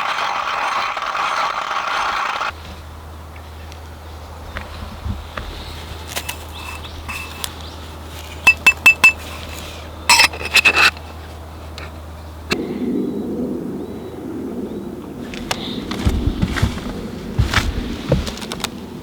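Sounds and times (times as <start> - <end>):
dishes clinking: 6.2 - 7.5, 8.4 - 10.9.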